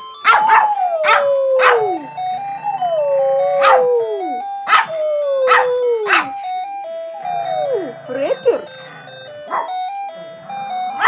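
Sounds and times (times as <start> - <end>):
alarm clock beeping melody: 0.0 - 11.0
dog howling: 0.2 - 6.5.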